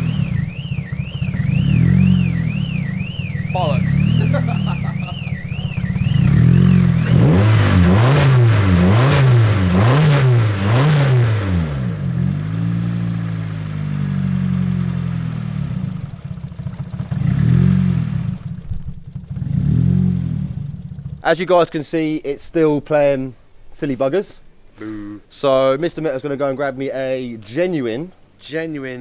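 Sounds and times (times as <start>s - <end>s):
warbling car alarm: 0.0s - 11.1s
car engine revving and idling: 0.0s - 21.3s.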